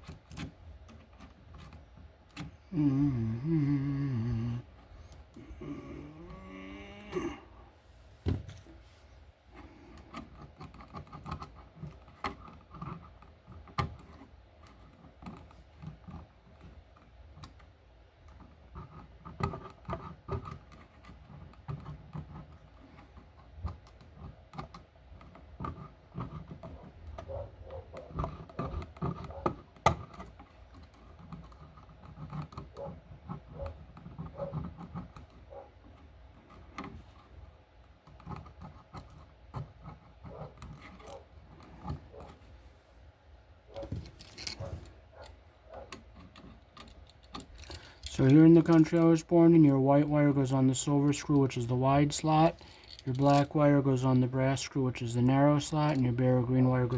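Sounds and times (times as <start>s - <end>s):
hand tools clicking and scraping: 9.5s - 17.7s, 43.7s - 56.9s.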